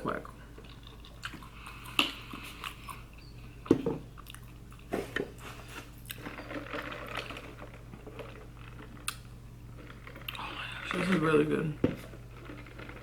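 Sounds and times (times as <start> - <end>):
crunchy chewing of food: 0.5 - 6.5.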